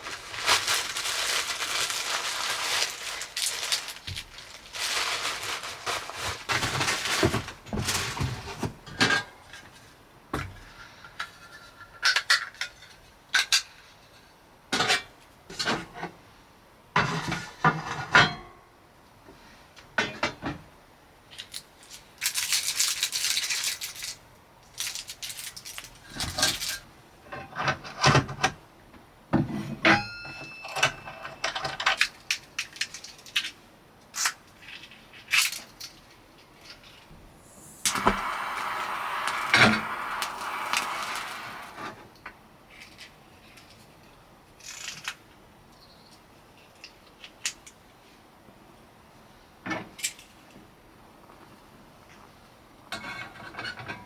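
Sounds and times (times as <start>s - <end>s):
steady rushing noise: 37.2s - 41.9s.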